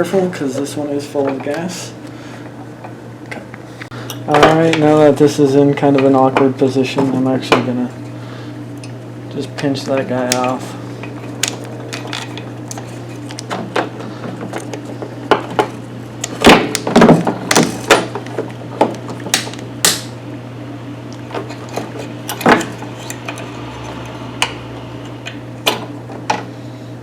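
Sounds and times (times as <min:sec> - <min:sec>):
low hum: 0:19.0 - 0:27.0
tools clicking and clunking: 0:21.2 - 0:24.2.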